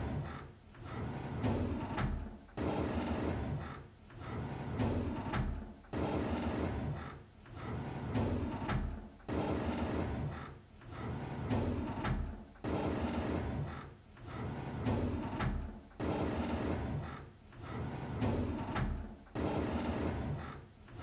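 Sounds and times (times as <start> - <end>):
drawer sliding open: 14.3 - 21.0.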